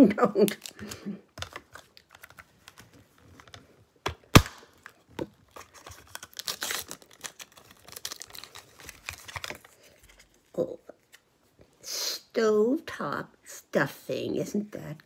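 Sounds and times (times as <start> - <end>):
wrapping being torn and crinkled: 0.3 - 3.5, 4.4 - 11.3.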